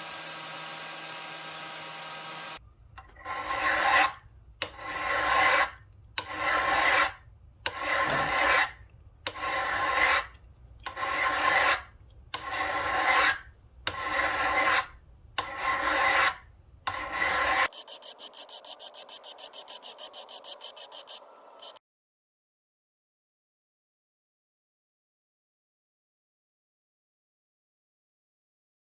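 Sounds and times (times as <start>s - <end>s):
hand file rasping on steel: 3.2s - 21.8s
fast even ticking: 17.7s - 21.8s.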